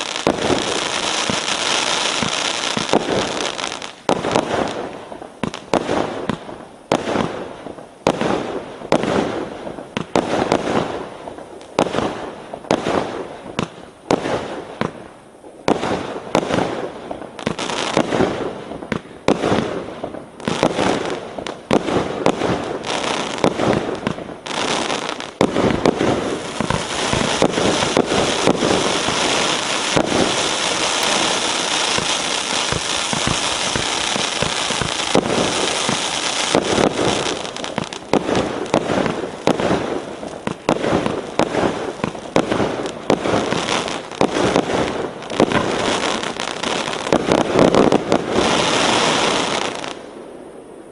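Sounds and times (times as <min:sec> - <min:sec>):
firework crackling: 0:00.0 - 0:50.9
firework cake bangs: 0:25.4 - 0:48.7.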